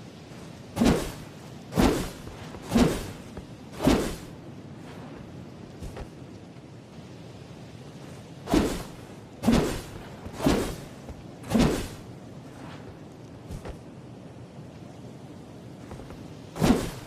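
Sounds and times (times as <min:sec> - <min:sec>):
sword strokes: 0:00.8 - 0:01.2, 0:01.8 - 0:03.2, 0:03.8 - 0:04.3, 0:08.5 - 0:10.8, 0:11.5 - 0:12.0.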